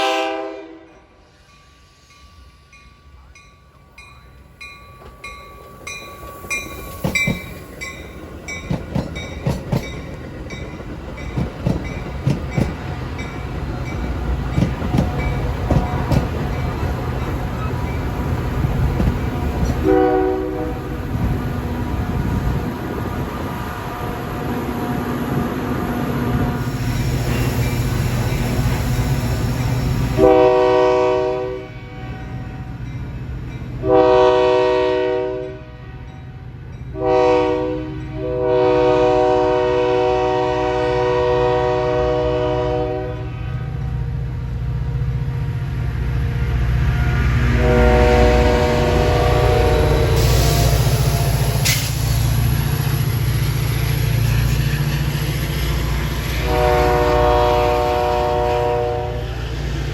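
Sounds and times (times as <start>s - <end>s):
train air horn blasts: 0.0s - 1.3s, 19.6s - 20.9s, 30.1s - 32.6s, 33.8s - 36.1s, 37.0s - 43.9s, 47.4s - 52.1s, 56.2s - 59.5s
locomotive rumble: 2.7s - 35.0s, 38.3s - 59.9s.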